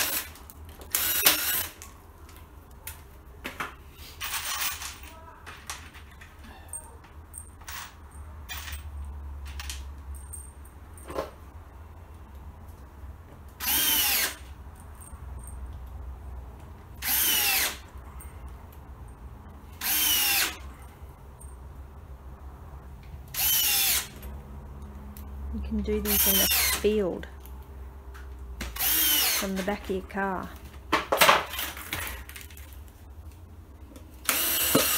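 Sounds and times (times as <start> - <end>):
power drill driving into plastic: 34.3 - 34.9.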